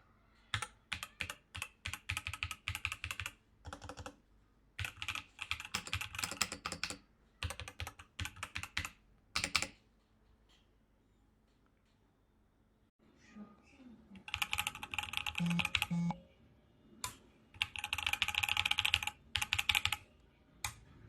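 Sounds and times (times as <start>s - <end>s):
mechanical keyboard typing: 0.5s - 4.2s, 4.8s - 9.8s, 14.3s - 16.1s, 17.6s - 20.0s.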